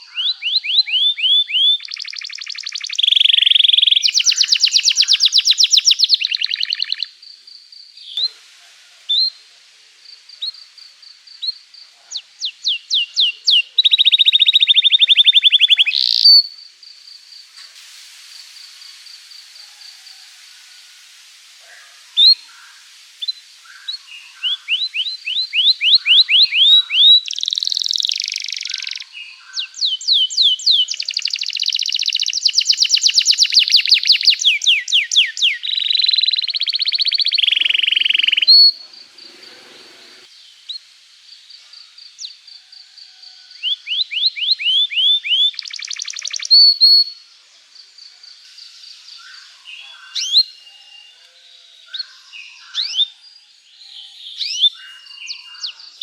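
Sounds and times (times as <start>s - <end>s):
canary trilling: 0.0s - 7.1s, 12.1s - 16.6s, 24.5s - 29.1s, 30.0s - 40.3s, 43.6s - 47.2s
canary chirps: 0.0s - 7.2s, 10.2s - 16.7s, 21.6s - 40.9s, 43.1s - 47.3s, 48.1s - 56.0s.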